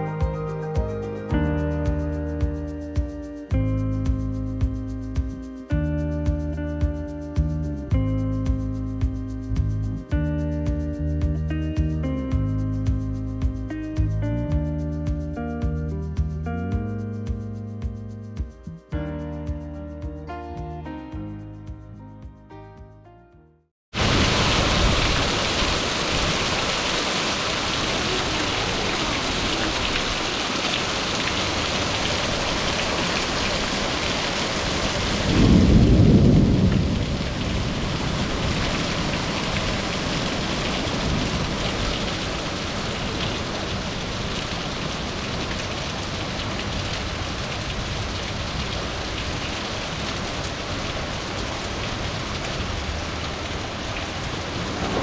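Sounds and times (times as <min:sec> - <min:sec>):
hail falling hard: 0:24.0 - 0:46.4
thunder rumbling: 0:35.1 - 0:43.4, 0:54.0 - 0:55.0.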